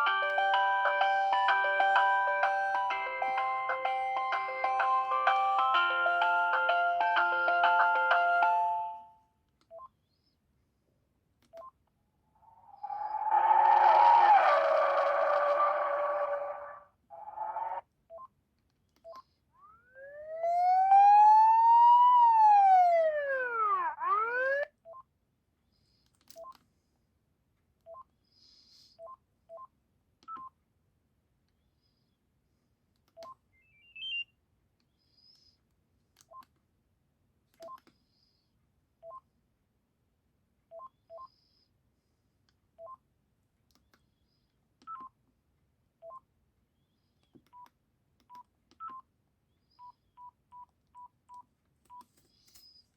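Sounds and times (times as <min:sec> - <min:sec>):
buzzy phone ringtone: 0:00.0 - 0:09.2
keypad beeps: 0:33.2 - 0:34.2.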